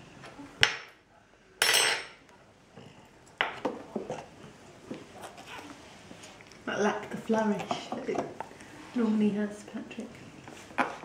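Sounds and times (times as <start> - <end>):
cutlery clinking on crockery: 1.6 - 2.2.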